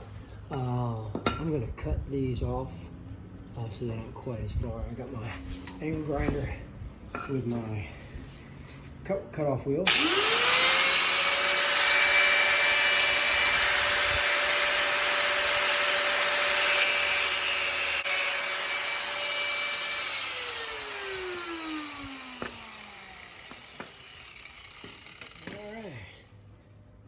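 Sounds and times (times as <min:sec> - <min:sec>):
angle grinder cutting metal: 0:09.9 - 0:25.9.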